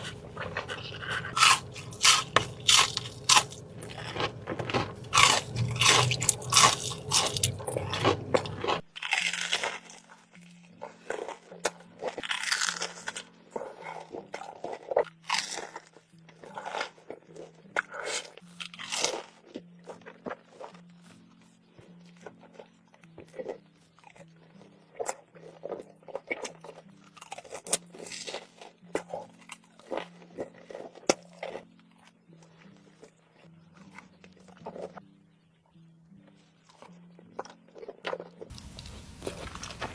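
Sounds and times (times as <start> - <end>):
faint low hum: 0.0 - 8.8
chewing with crisp crunches: 0.0 - 9.8, 11.1 - 15.8, 16.5 - 20.8, 23.3 - 31.7, 33.8 - 35.0, 36.7 - 39.9.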